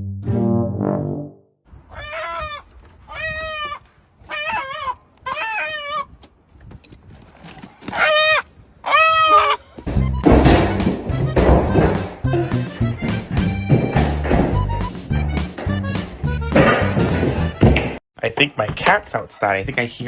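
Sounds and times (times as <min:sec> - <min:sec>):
animal calling: 0:01.9 - 0:06.1, 0:07.9 - 0:09.8.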